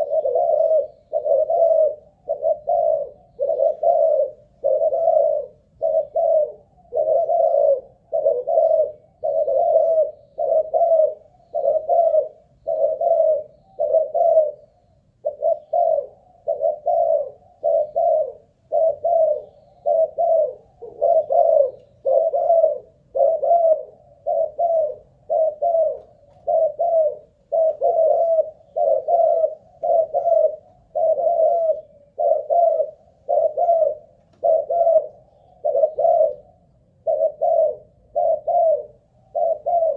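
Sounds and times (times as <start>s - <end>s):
dove cooing: 0.0s - 39.9s.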